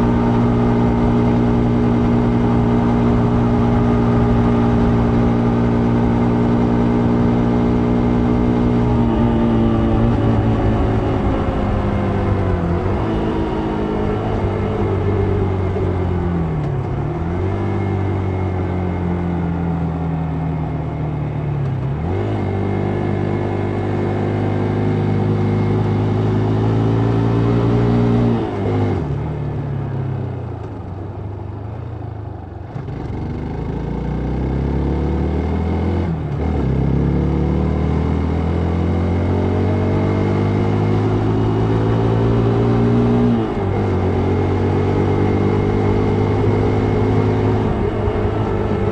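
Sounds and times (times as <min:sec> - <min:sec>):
vehicle engine accelerating: 0:00.0 - 0:48.9.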